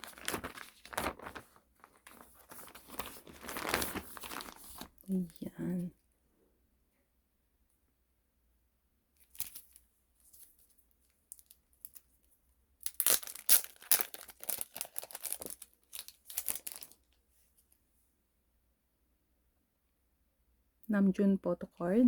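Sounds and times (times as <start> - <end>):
packaging tearing and crinkling: 0.0 - 5.0, 9.2 - 9.8, 12.8 - 17.1.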